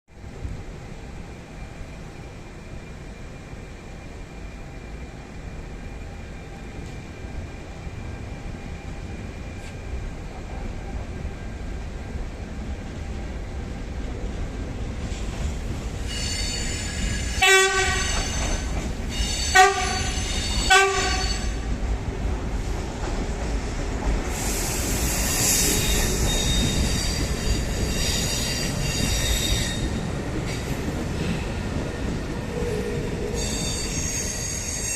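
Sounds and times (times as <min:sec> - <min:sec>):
train rumble: 0:00.1 - 0:34.9
metallic wheel squeal: 0:16.0 - 0:21.6, 0:24.4 - 0:30.0, 0:33.2 - 0:34.9
train horn toots: 0:17.3 - 0:18.7, 0:19.4 - 0:21.7.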